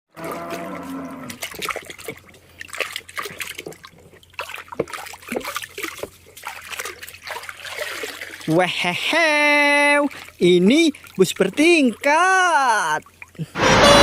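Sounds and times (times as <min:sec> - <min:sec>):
water splashing and trickling: 0:00.1 - 0:13.6
brief pitched sound: 0:13.6 - 0:14.0.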